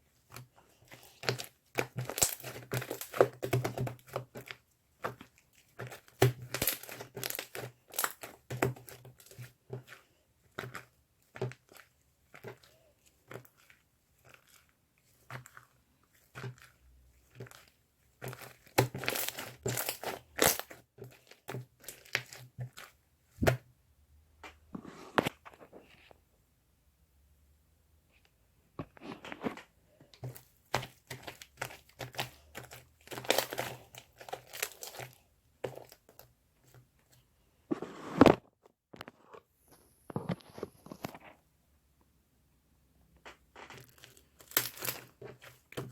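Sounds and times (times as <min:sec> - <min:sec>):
close-up crackling and crinkling: 0:00.0 - 0:26.4, 0:28.0 - 0:42.2, 0:43.0 - 0:45.9.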